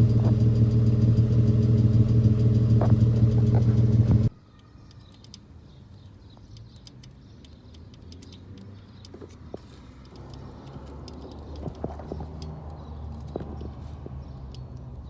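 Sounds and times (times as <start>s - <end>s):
car engine idling: 0.0s - 4.3s
engine ticking: 0.0s - 4.3s.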